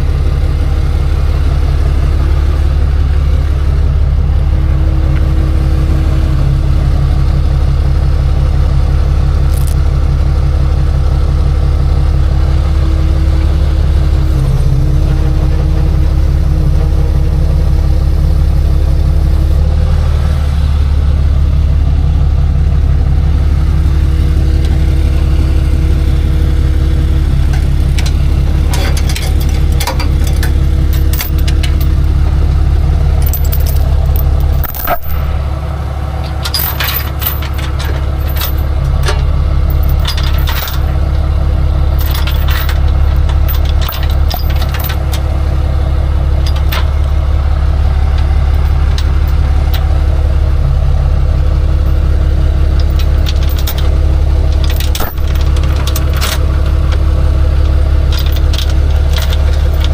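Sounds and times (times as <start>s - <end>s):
faint engine whine: 0.0s - 59.9s
truck engine idling: 0.0s - 59.9s
metal clinks and rattles: 27.4s - 32.1s, 33.2s - 35.5s, 36.2s - 41.2s, 41.9s - 45.2s, 46.4s - 47.1s, 48.1s - 49.9s, 52.7s - 59.9s.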